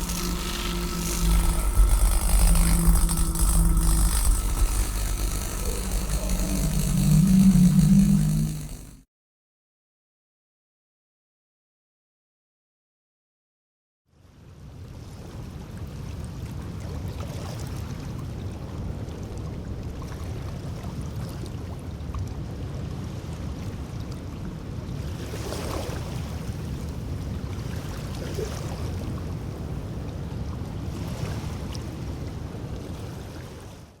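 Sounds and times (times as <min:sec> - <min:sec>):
low rumble: 0:00.0 - 0:09.0.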